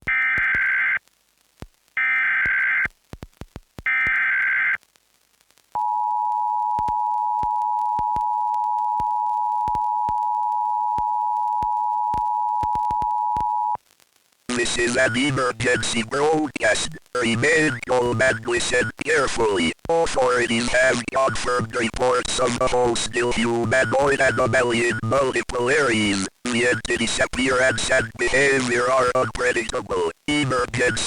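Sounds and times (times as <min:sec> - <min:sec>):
data tone bursts: 0:14.5 - 0:31.0.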